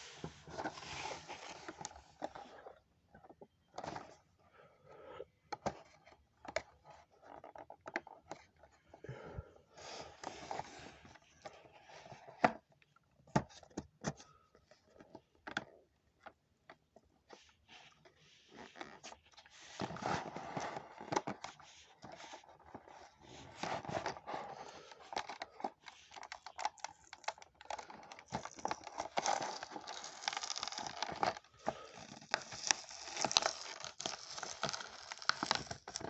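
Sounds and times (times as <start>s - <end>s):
plastic packaging crinkling: 25.0s - 36.0s
cardboard ripping: 28.4s - 36.0s.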